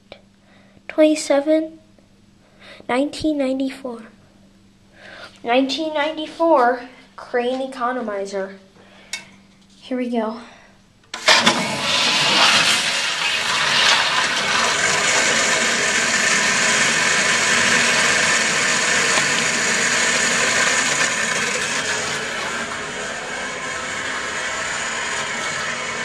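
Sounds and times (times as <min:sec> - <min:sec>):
toilet flushing: 0:11.2 - 0:26.0.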